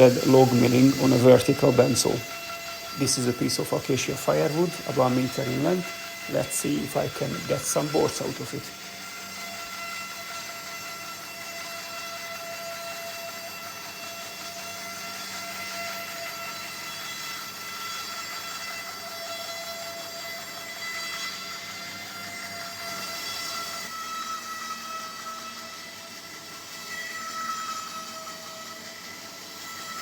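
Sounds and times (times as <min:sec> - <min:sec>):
saw blade hissing in wood: 0:00.0 - 0:08.8
bandsaw whining: 0:00.0 - 0:30.0.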